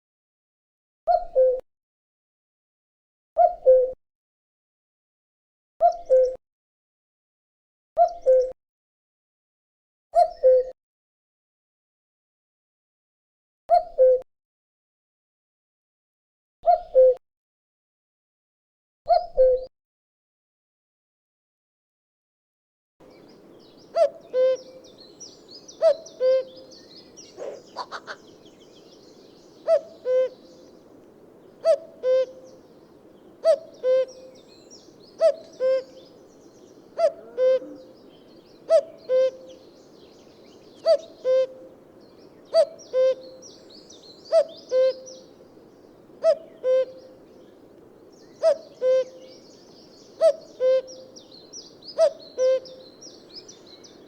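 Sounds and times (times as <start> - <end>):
cuckoo calling: 1.1 - 1.6, 5.8 - 6.4, 10.2 - 10.7, 23.1 - 54.0
small birds twittering: 23.0 - 54.0.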